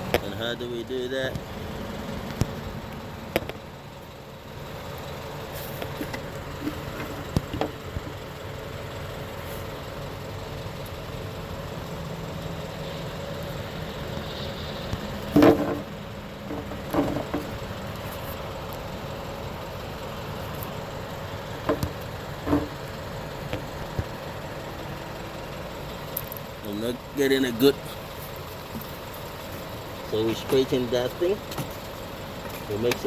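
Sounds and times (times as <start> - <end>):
metal clank: 15.2 - 17.6.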